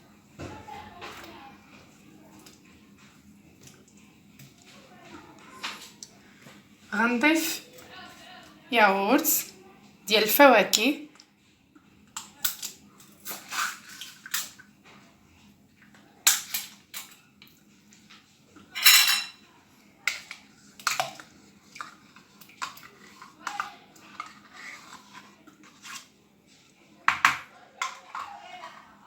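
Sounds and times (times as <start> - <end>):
containers and utensils clicking: 27.1 - 29.0.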